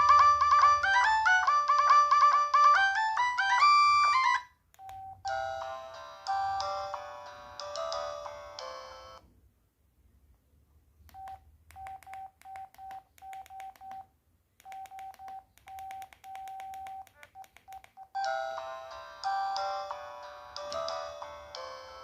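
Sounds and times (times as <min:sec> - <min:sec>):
fuller polyphonic ringtone: 0:00.0 - 0:09.2, 0:18.2 - 0:22.0
ringtone beeps: 0:00.0 - 0:09.2, 0:14.7 - 0:22.0.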